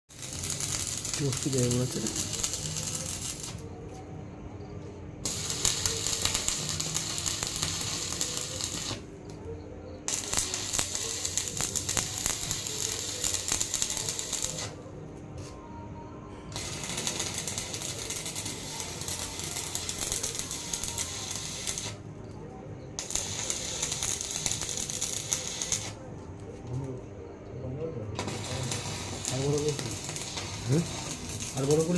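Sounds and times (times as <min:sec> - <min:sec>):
arc welding crackling: 0:00.1 - 0:03.7, 0:05.2 - 0:09.1, 0:10.0 - 0:14.8, 0:16.5 - 0:22.0, 0:23.0 - 0:26.1, 0:28.2 - 0:31.9.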